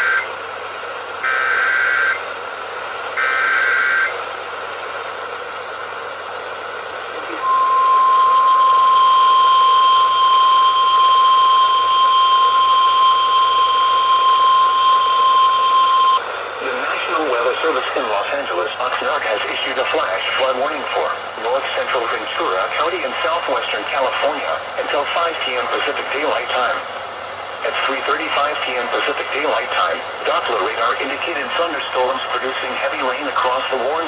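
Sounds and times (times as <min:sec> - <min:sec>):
radio hiss: 0:14.7 - 0:34.0.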